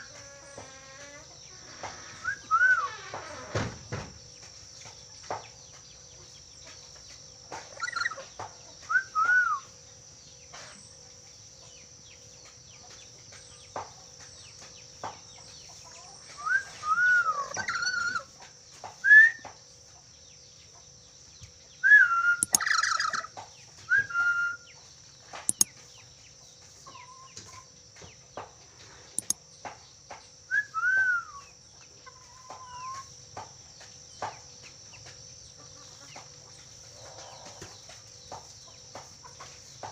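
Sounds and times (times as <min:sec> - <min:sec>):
parrot whistling: 0:21.9 - 0:23.2
faint steady high tone: 0:22.0 - 0:23.0, 0:25.5 - 0:25.7.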